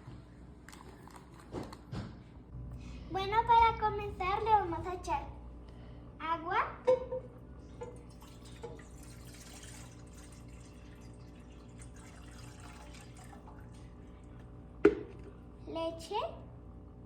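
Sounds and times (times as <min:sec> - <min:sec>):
steady low hum: 0:00.0 - 0:17.0
water pouring into a pot: 0:08.0 - 0:13.8.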